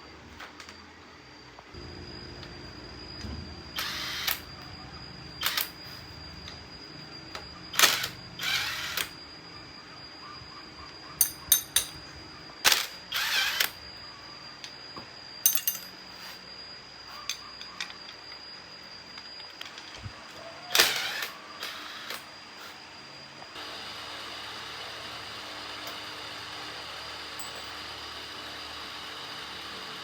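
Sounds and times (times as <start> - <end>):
metal parts and tools clinking: 11.2 - 12.0, 15.4 - 16.4, 27.4 - 27.8.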